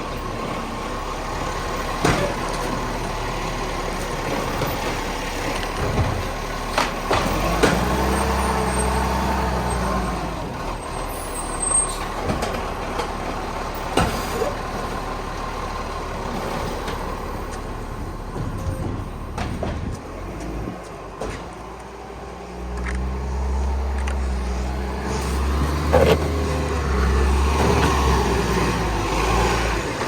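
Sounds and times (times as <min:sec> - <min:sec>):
garbage truck engine: 0:00.0 - 0:30.0
mechanical knocks and clunks: 0:18.3 - 0:21.9.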